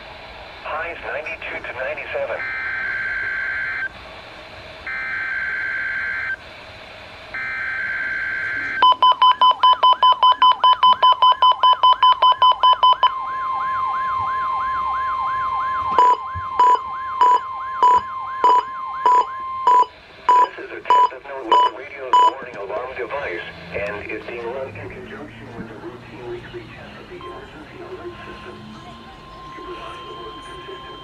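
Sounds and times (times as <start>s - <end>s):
wavering siren tone: 2.4s - 4.0s, 4.9s - 6.4s, 7.4s - 20.0s, 27.2s - 31.0s
steady alarm tone: 2.4s - 22.4s, 26.8s - 31.0s
loud beeps: 7.4s - 22.4s, 27.2s - 31.0s
rapid beeping: 7.4s - 31.0s.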